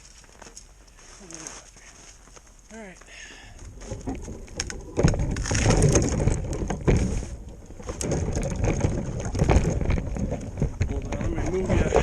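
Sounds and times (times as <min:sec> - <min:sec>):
loud crunching with knocks: 0:03.7 - 0:12.0.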